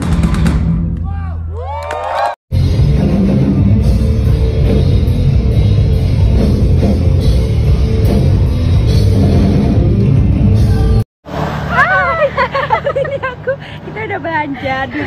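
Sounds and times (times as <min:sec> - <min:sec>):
heavy metal band playing live: 0:02.5 - 0:11.0.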